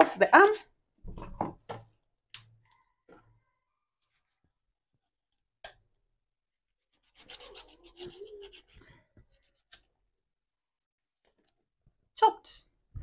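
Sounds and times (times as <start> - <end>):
knife cutting chicken joint: 7.0 - 8.8.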